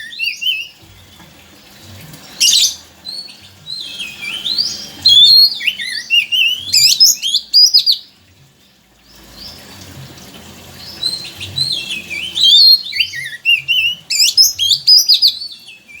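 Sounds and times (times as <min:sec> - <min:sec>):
bird whistling song: 0:00.0 - 0:00.8, 0:02.2 - 0:08.2, 0:10.8 - 0:16.0.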